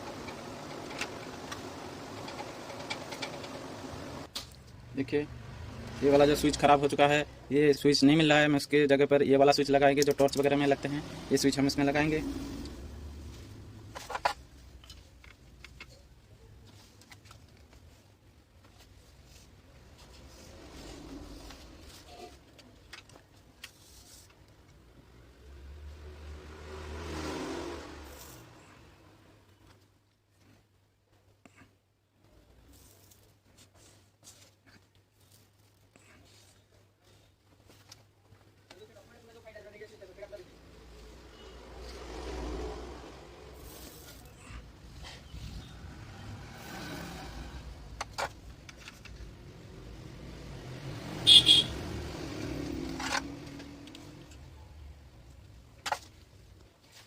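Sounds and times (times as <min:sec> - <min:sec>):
road vehicle passing by: 0:00.0 - 0:07.7, 0:10.1 - 0:14.4, 0:19.3 - 0:22.3, 0:24.9 - 0:29.4, 0:40.5 - 0:55.5.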